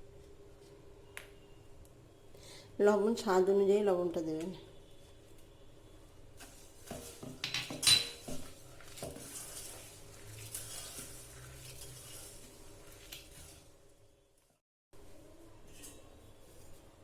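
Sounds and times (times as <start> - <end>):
spoon scraping while stirring: 6.4 - 13.7
spoon clinking against bowl: 7.4 - 8.3.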